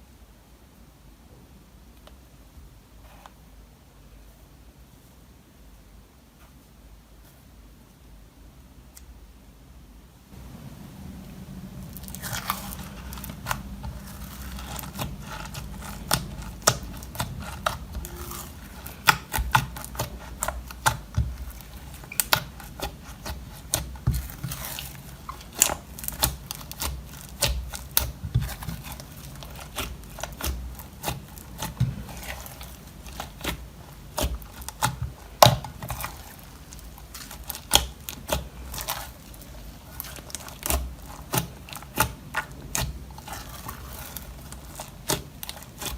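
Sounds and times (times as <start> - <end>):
slime squelching by hand: 10.4 - 45.9.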